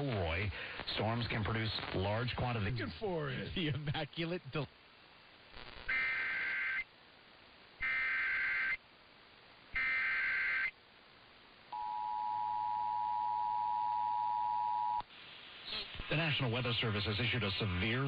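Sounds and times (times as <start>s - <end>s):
digital data bursts: 5.6s - 6.9s.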